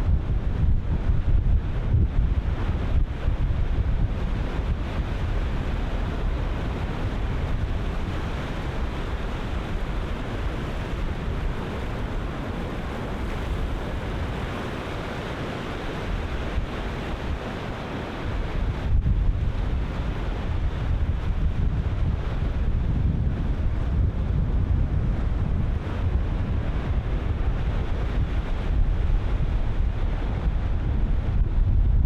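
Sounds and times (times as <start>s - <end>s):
wind buffeting microphone: 0.0s - 32.0s.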